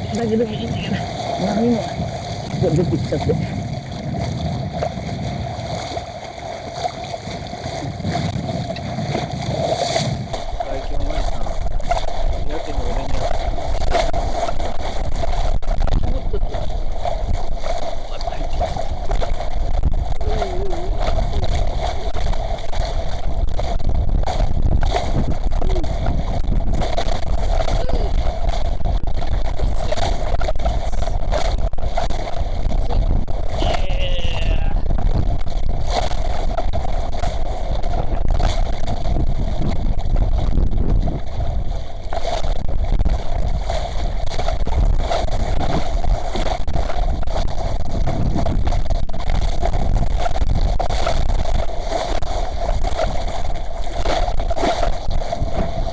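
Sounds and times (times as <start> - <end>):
steady hum: 0.0 - 55.9
water splashing against hull: 0.0 - 55.9
wind buffeting microphone: 0.0 - 55.9.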